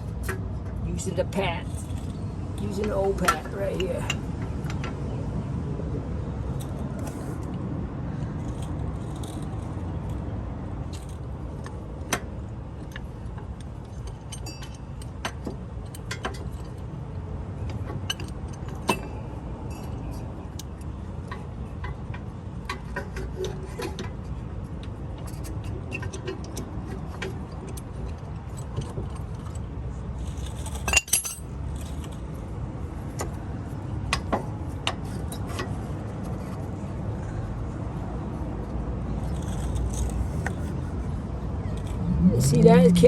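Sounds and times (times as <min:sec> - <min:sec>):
metallic clinks and rattles: 0:12.8 - 0:16.9, 0:17.7 - 0:32.4
metal parts clattering: 0:30.3 - 0:32.2.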